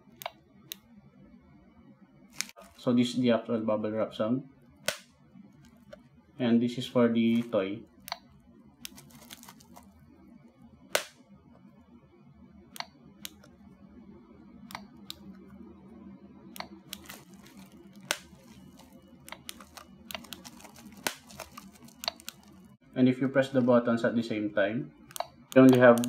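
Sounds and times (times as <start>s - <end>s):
recorded bubble wrap pops: 8.9s - 9.9s, 17.0s - 22.6s.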